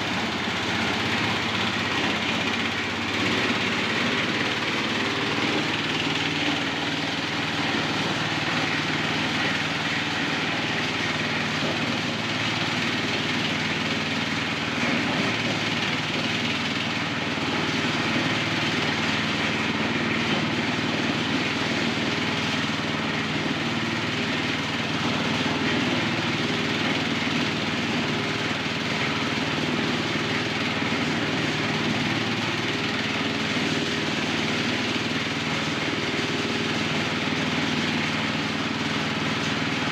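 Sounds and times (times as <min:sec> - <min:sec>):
corn sheller engine drone: 0:00.0 - 0:39.9.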